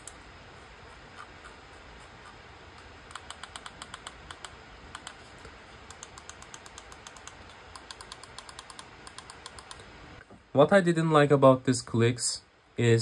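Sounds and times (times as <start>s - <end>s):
mouse buttons clicking: 3.1s - 5.2s, 5.9s - 9.8s.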